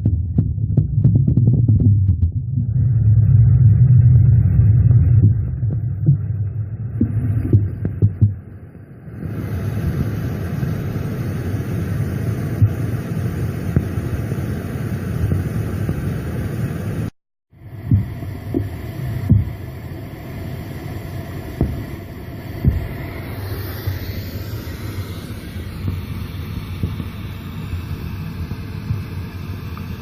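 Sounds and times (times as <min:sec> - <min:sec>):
low throbbing machine hum: 0:00.0 - 0:30.0
hiss: 0:09.1 - 0:30.0.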